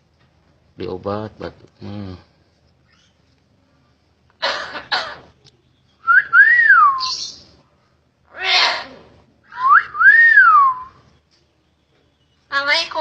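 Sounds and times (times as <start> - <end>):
myna whistling: 6.0 - 7.4
harsh raspy bird call: 8.3 - 9.0.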